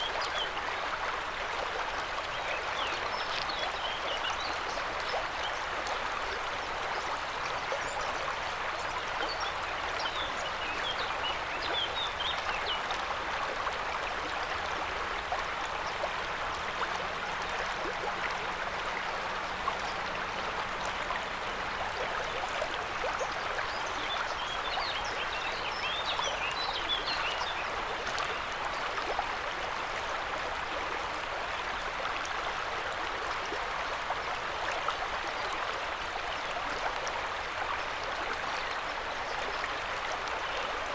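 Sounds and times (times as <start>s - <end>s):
river water rushing: 9.7s - 28.3s.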